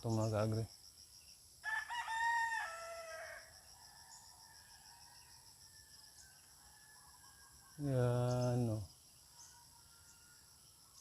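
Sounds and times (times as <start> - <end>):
insects chirring: 0.0 - 11.0
rooster crowing: 1.6 - 7.7.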